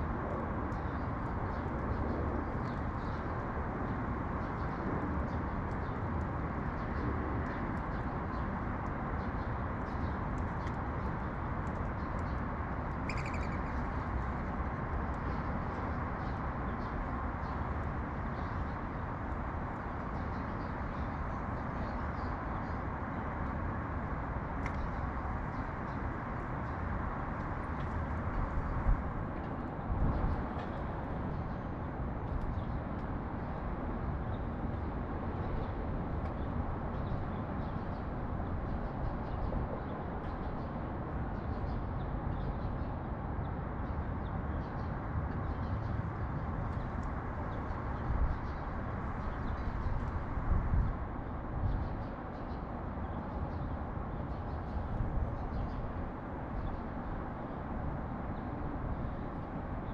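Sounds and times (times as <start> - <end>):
urban traffic rumble: 0.0 - 59.9
small birds chirping: 9.2 - 23.4.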